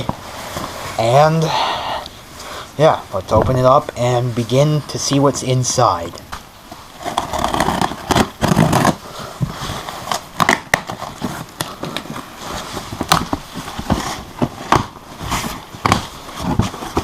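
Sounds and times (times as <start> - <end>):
cardboard and packing rustling: 0.0 - 1.2, 6.3 - 17.0.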